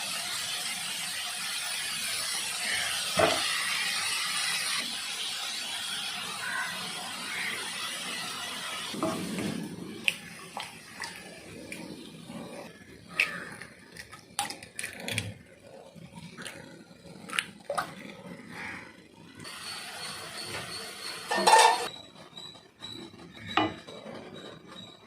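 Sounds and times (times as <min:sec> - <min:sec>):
cookware clinking and knocking: 0:21.3 - 0:21.9, 0:23.4 - 0:24.5.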